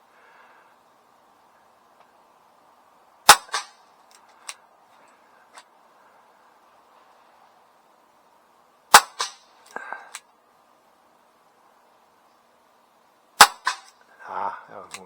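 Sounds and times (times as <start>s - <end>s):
air pistol shot: 3.3s - 3.7s, 8.9s - 9.4s, 13.4s - 13.9s.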